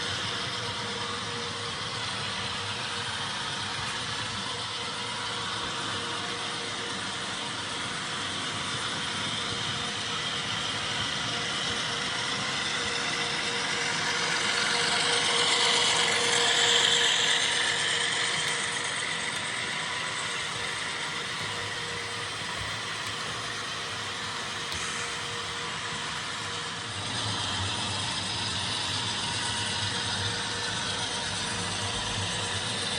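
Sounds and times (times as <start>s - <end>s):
model train running with whine: 0.0s - 32.9s.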